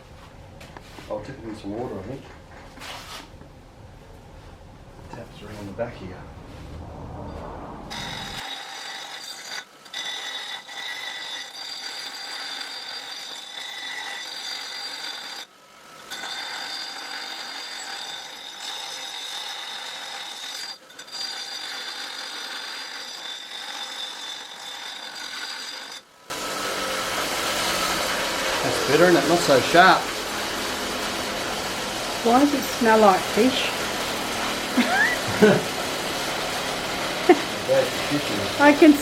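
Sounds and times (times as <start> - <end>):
grinder on steel plate: 7.9 - 39.0.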